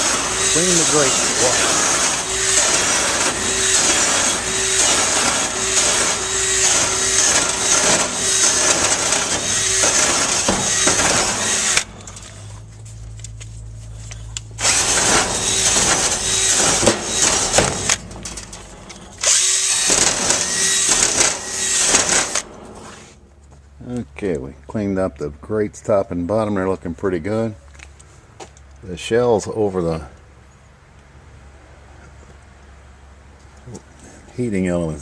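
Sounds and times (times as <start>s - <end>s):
drill wire brush scrubbing metal: 0.0s - 12.7s, 14.6s - 23.1s.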